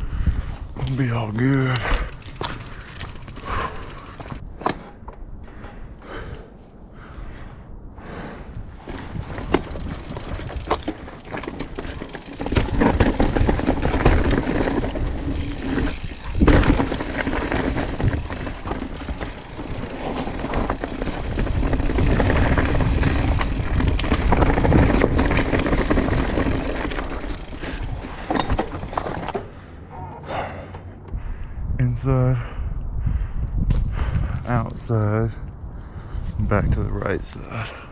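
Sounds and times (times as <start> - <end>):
wind rumble on microphone: 0.0 - 29.3, 31.0 - 37.9
bike rattling over rocks: 0.8 - 4.8, 8.7 - 29.6.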